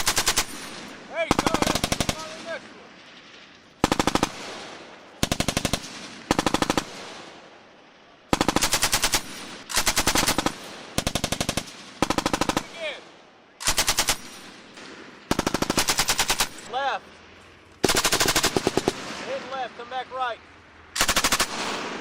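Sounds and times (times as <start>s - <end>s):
machine gun automatic fire bursts: 0.0s - 2.6s, 3.8s - 7.3s, 8.3s - 13.0s, 13.6s - 14.6s, 15.3s - 16.7s, 17.8s - 19.4s, 21.0s - 22.0s.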